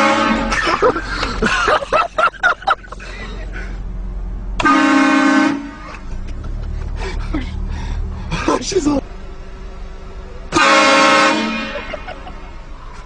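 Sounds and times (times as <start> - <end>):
train horn blast: 0.0 - 0.6, 4.6 - 6.1, 10.5 - 12.1.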